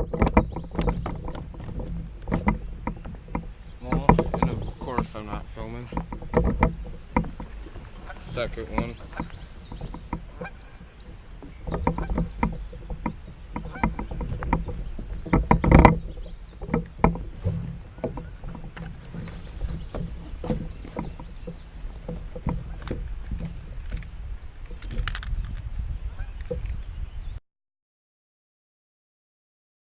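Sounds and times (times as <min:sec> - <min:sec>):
knocks on a kayak: 0:00.0 - 0:10.6, 0:11.4 - 0:24.0.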